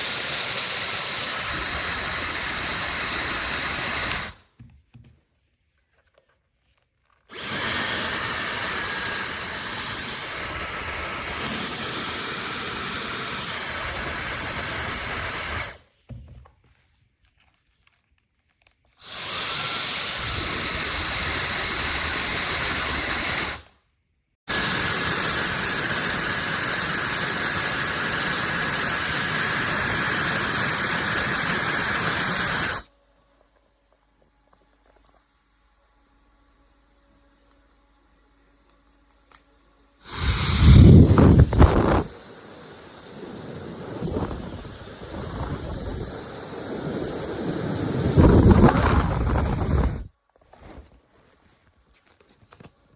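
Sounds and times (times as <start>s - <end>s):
hair dryer blowing: 0.0s - 4.4s, 7.3s - 15.8s, 19.0s - 23.6s, 24.5s - 32.8s, 40.0s - 50.1s.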